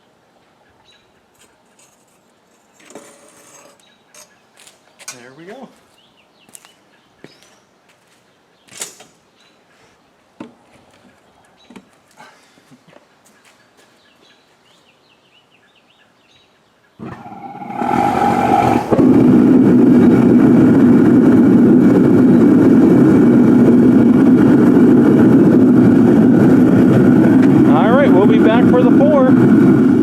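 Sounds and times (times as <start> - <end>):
forge burner roaring: 17.0 - 30.0.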